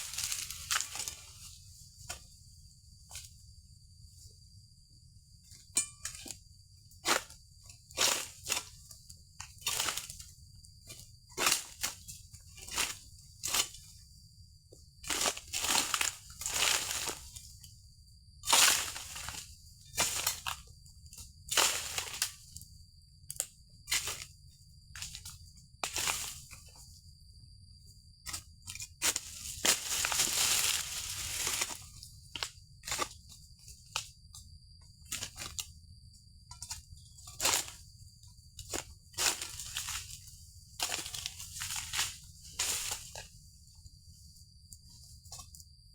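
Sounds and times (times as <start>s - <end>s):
rustling and crackling fronds: 29.1s - 31.8s.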